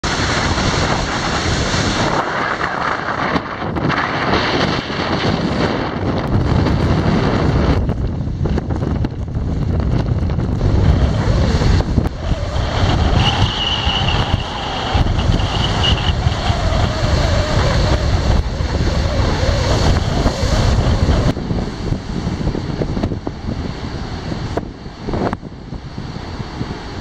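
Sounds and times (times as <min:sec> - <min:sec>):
strong wind buffeting microphone: 0:00.0 - 0:27.0
surf rushing: 0:00.0 - 0:27.0
thin high whistle: 0:13.1 - 0:16.5.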